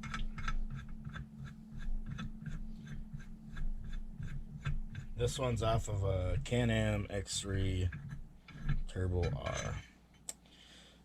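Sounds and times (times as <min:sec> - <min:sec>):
rapid light clicking of hand tool: 0:00.0 - 0:05.2
steady low hum: 0:00.0 - 0:11.0.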